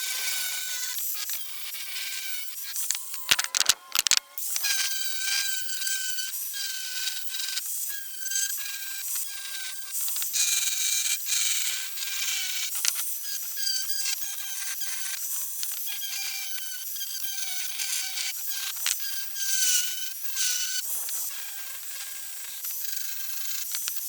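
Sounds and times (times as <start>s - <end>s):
sharp clicks: 2.8s - 4.6s.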